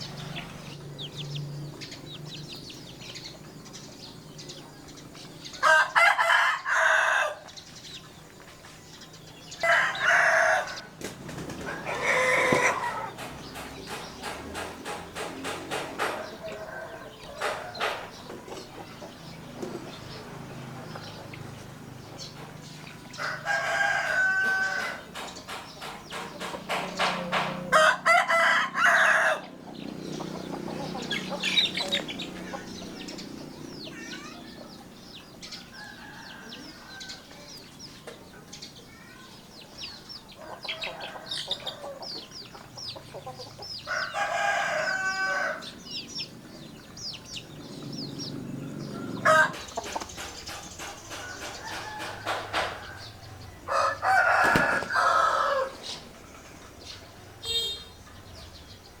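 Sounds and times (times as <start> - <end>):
roosters crowing: 0.0 - 8.2, 8.8 - 38.2, 38.8 - 58.9
small birds chirping: 0.0 - 59.0
hens clucking: 9.6 - 38.4, 40.0 - 57.1.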